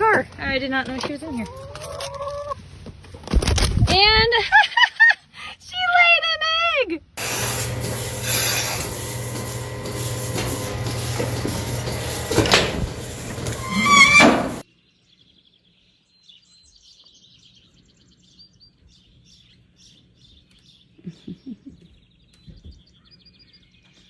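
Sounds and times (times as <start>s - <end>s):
small birds chirping: 14.6s - 24.0s.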